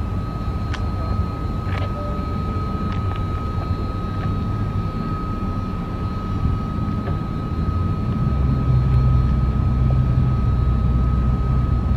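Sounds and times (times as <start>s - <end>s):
boat engines rumbling: 0.0s - 7.3s
thin steady high tone: 0.0s - 11.9s.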